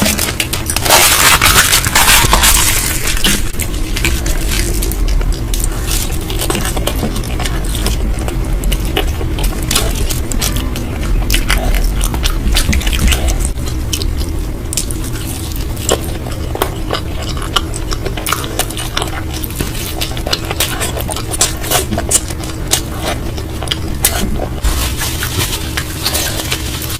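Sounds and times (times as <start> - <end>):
chewing and crunching food: 0.0 - 26.9
steady low hum: 0.0 - 26.9.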